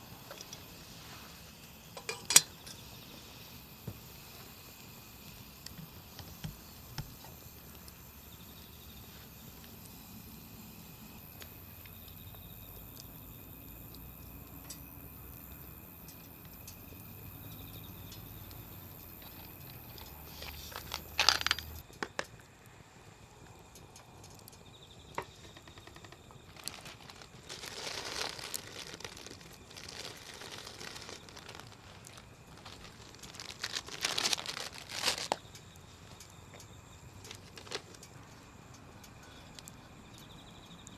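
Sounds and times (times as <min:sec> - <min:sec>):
campfire crackling and popping: 0:00.2 - 0:38.2.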